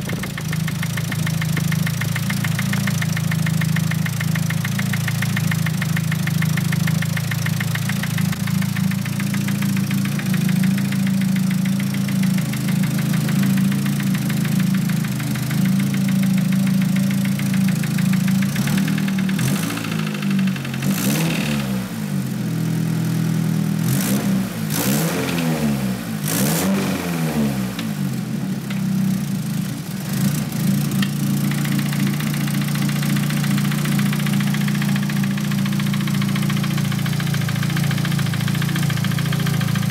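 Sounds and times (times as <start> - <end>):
fast knocking from cylinder head: 0.0 - 21.4
car engine idling and revving: 0.0 - 39.9.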